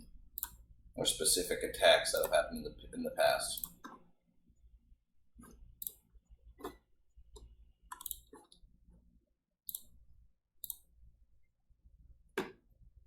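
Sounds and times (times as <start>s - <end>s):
low room hum: 0.0s - 13.0s
computer keys clicking: 2.2s - 2.4s, 7.4s - 8.5s.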